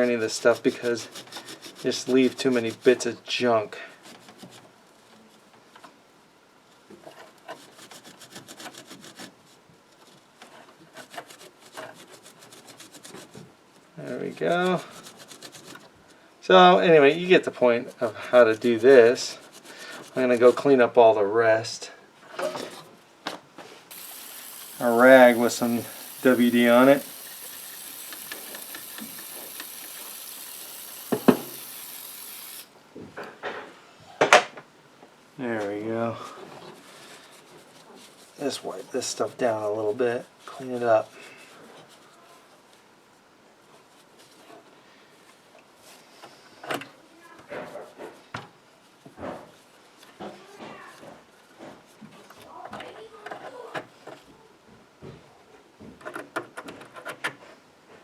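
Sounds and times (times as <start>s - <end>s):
scrubbing pad on metal pins: 0.0s - 3.4s, 7.0s - 16.0s, 23.9s - 32.6s
steady hiss: 23.6s - 32.8s.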